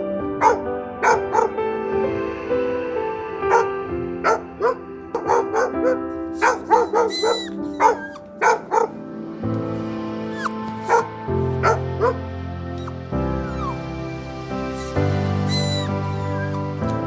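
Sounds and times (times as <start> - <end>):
background music with held notes: 0.0 - 17.0
dog yipping and barking: 0.4 - 1.5, 3.5 - 9.0, 10.9 - 12.2.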